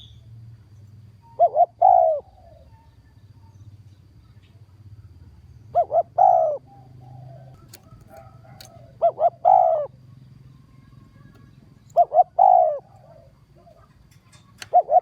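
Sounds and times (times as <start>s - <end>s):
dove cooing: 1.2s - 3.1s, 5.0s - 15.0s.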